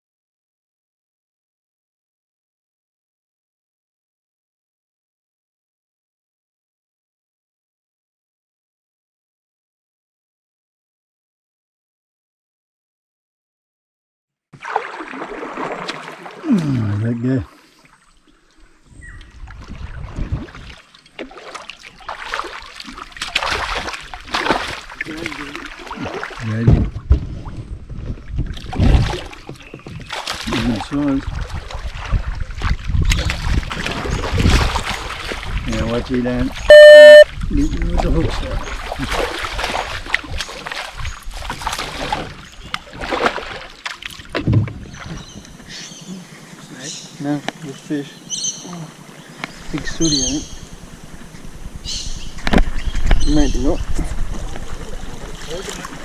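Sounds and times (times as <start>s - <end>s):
water splashing beside a canoe: 14.6s - 36.7s, 37.3s - 56.0s.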